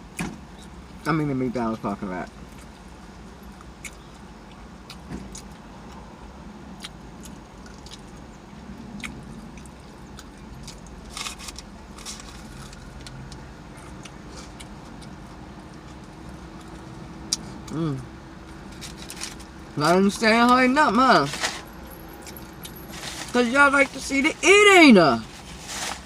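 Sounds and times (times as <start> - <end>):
steady low hum: 0.0 - 26.0
chewing: 2.5 - 6.0, 6.8 - 17.8.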